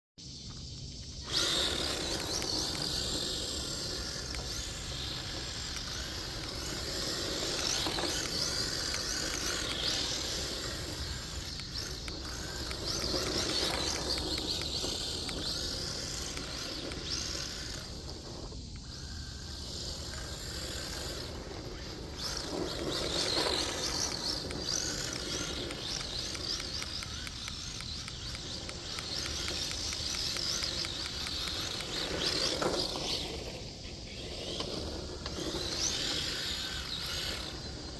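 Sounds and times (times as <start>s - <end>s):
electric motor high whine: 0.2s - 37.9s.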